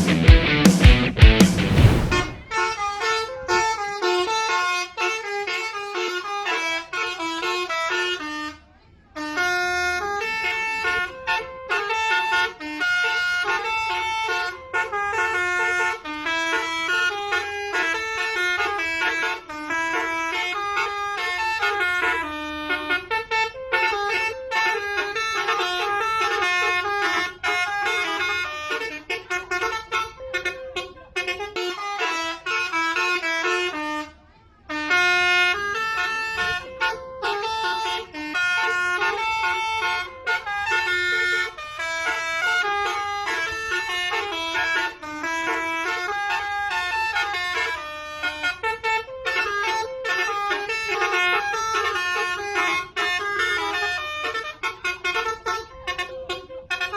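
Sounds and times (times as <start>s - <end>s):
loud rock music: 0.0s - 2.4s
tuned bus air horns playing tune: 0.0s - 56.9s.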